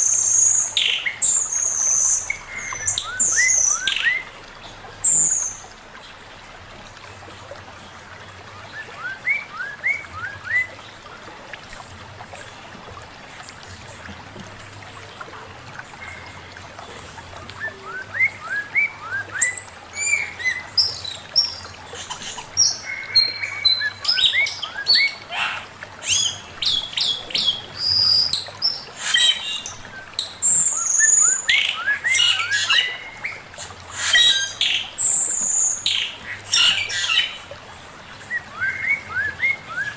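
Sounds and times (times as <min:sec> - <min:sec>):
bird singing chirps and whistles: 0:00.0 - 0:04.3, 0:08.7 - 0:10.8, 0:17.5 - 0:21.6, 0:22.6 - 0:33.4, 0:38.2 - 0:39.9.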